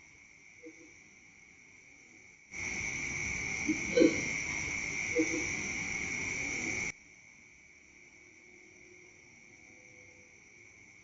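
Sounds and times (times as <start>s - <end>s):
crickets chirping: 0.0s - 11.0s
hiss: 2.5s - 7.0s.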